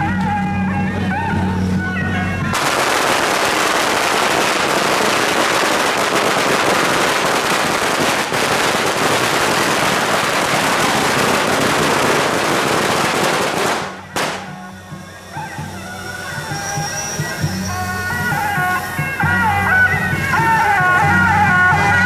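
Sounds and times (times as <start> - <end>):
firecrackers crackling: 2.5 - 22.0
firecracker bang: 2.6 - 17.5.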